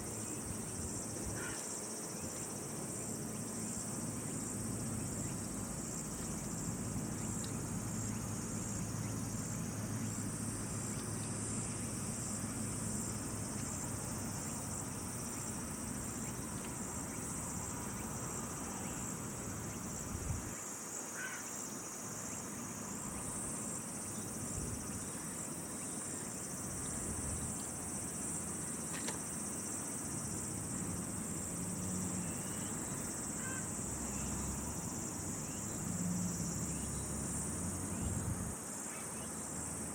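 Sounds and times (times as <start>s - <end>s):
insects trilling: 0.0s - 39.9s
faint click: 7.4s - 7.6s.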